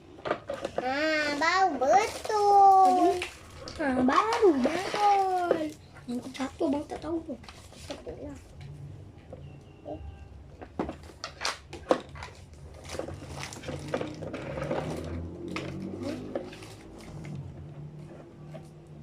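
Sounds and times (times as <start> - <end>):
plastic pieces clattering: 2.0 - 6.9, 10.6 - 17.4.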